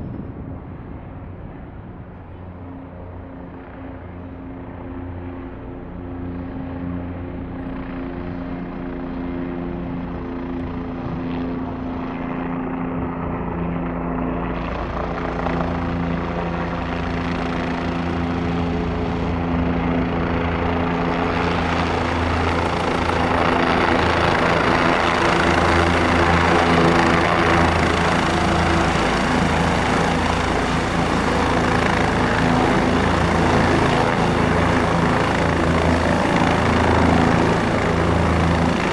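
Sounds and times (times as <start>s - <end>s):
helicopter rotor and turbine running: 0.0s - 38.9s.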